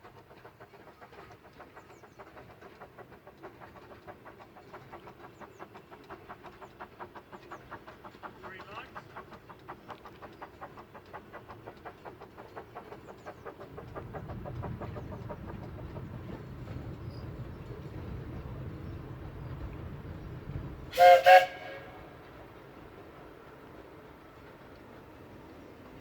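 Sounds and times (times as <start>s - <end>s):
steam locomotive exhaust beats: 0.0s - 26.0s
train running rumble: 0.0s - 26.0s
steam whistle blasts: 20.9s - 22.2s.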